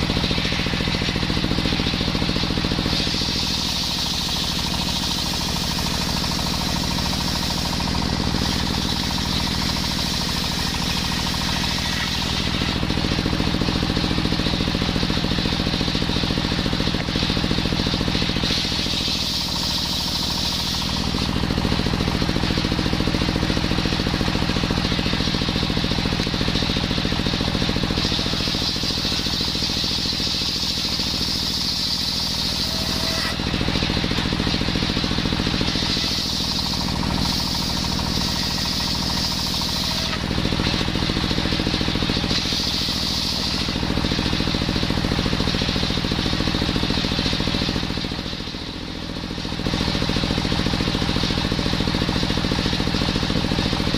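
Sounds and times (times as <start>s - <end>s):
two-stroke saw engine running: 0.0s - 53.9s
high hissing cutting noise: 32.0s - 33.6s.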